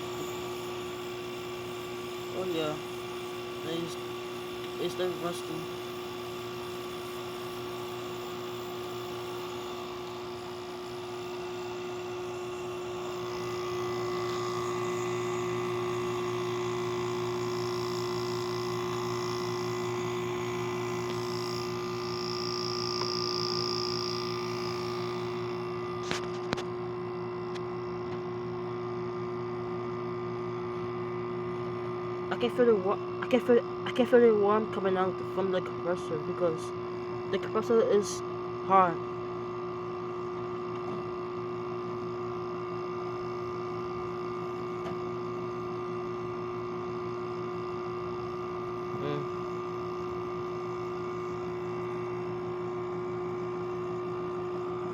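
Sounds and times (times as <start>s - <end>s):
air conditioner humming: 0.0s - 40.7s, 48.1s - 54.9s.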